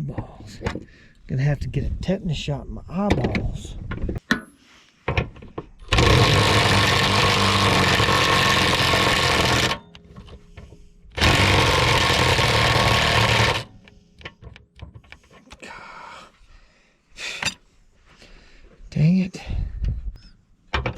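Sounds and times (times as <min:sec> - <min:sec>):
impact wrench hammering bolt: 0:05.8 - 0:10.6, 0:11.2 - 0:15.0
small knocks and clicks: 0:13.8 - 0:15.6.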